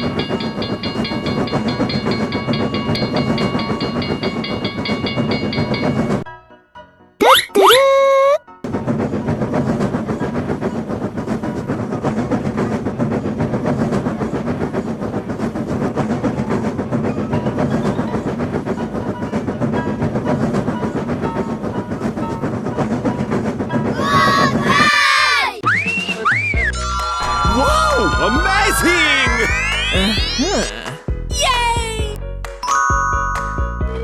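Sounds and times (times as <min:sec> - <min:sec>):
train clattering on track: 0:00.0 - 0:06.3, 0:08.6 - 0:29.9
high wavering sound: 0:26.7 - 0:31.0.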